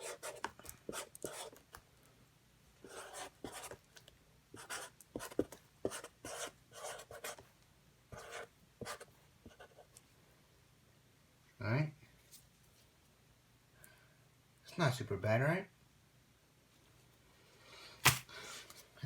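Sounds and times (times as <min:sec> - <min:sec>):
marker scratching across surface: 0:00.0 - 0:01.6, 0:02.8 - 0:03.8, 0:04.6 - 0:07.4, 0:08.1 - 0:09.9.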